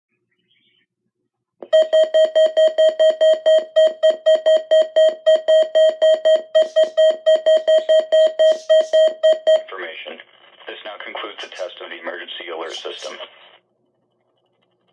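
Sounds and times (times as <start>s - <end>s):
weather radio alarm beeping rapidly: 1.7s - 9.7s.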